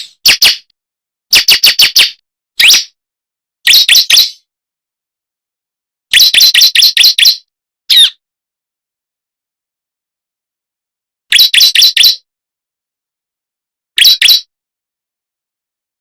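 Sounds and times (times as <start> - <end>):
bird sharp chirping: 0.0 - 0.7, 1.3 - 3.0, 3.7 - 4.5, 6.1 - 8.2, 11.3 - 12.2, 14.0 - 14.5.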